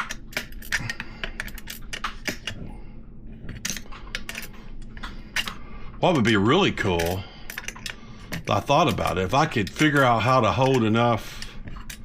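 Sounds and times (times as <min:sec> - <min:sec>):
metal parts and wrench clinking: 0:03.5 - 0:12.0.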